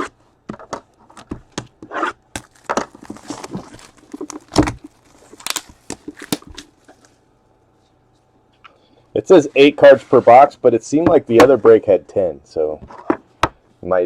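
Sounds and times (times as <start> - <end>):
cardboard boxes handled: 2.4 - 6.6.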